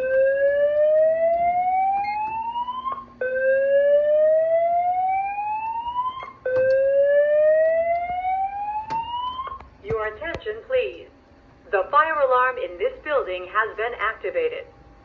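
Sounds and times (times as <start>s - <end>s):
rising whoop alarm tone: 0.0s - 9.6s.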